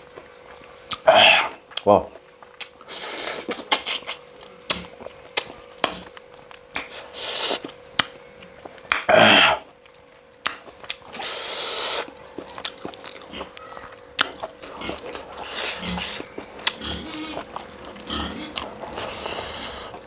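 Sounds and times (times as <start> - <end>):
faint steady hum: 0.0 - 20.0
mouth clicks and chewing: 0.0 - 20.0
loud slurps: 2.8 - 4.2, 6.8 - 7.7, 11.0 - 12.2, 14.2 - 20.0.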